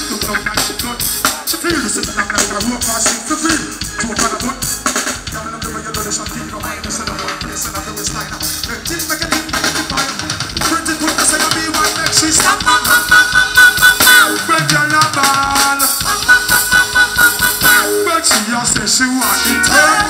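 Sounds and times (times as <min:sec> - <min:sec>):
reggae band music: 0:00.0 - 0:20.0
melodic line of held notes: 0:11.4 - 0:20.0.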